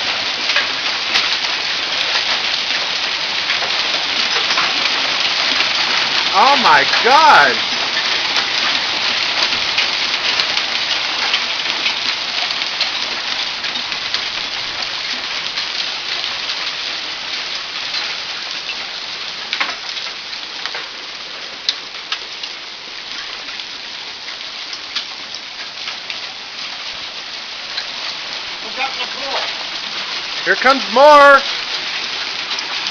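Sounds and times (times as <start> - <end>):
hail and rain pelting: 0.0 - 32.9.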